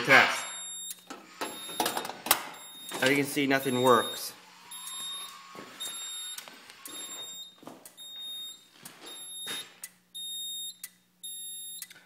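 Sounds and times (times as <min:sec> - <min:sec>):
high-pitched alarm panel beeps: 0:00.4 - 0:03.2, 0:03.8 - 0:12.0.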